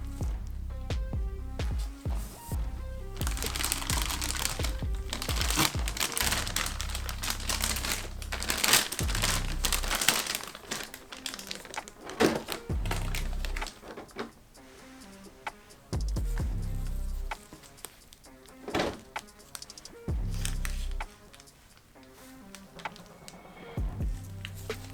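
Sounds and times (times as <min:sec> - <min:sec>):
background music: 0:00.0 - 0:24.9
packaging crinkling: 0:03.1 - 0:14.6, 0:17.3 - 0:23.4.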